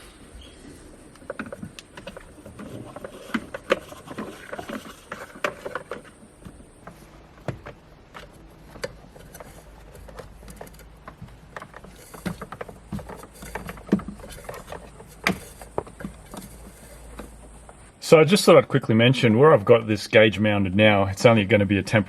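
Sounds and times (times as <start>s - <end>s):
hands handling parts and tools: 0.0s - 18.0s
rustling: 0.0s - 18.7s.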